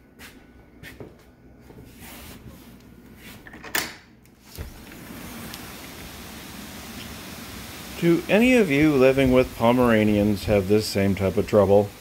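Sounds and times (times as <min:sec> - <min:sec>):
steady hiss: 0:04.5 - 0:12.0.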